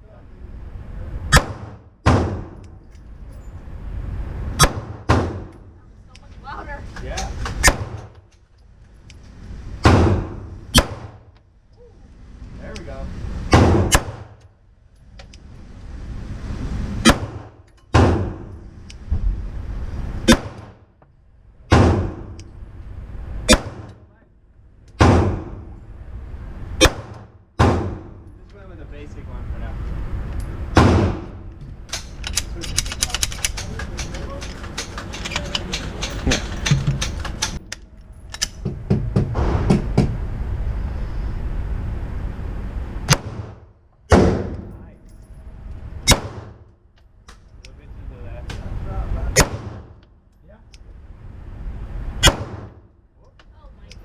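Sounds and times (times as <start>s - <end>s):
sharp crack: 1.3s - 2.8s, 4.6s - 5.7s, 7.2s - 8.2s, 9.8s - 11.4s, 13.5s - 14.5s, 17.0s - 18.5s, 20.2s - 20.9s, 23.4s - 24.0s, 26.8s - 28.1s, 43.1s - 44.7s, 46.0s - 47.5s, 49.4s - 50.1s, 52.2s - 52.9s
sharp clicks and knocks: 31.5s - 40.2s.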